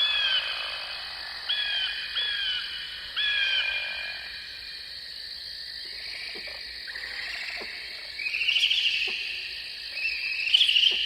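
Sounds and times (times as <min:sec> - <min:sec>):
high-pitched insect chorus: 0:00.0 - 0:11.0.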